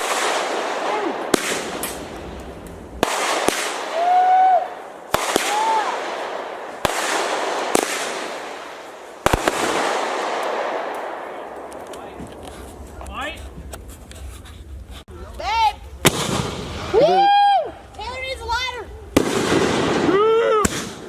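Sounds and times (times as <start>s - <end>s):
fireworks bangs: 0.0s - 13.8s, 16.0s - 17.4s, 18.0s - 21.0s
fireworks crackling: 0.0s - 21.0s.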